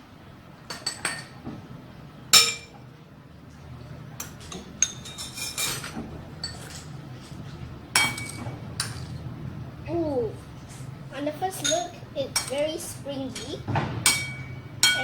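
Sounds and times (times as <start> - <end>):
cutlery clinking on a plate: 2.4 - 2.8, 4.2 - 6.9, 8.0 - 9.1, 14.1 - 15.0.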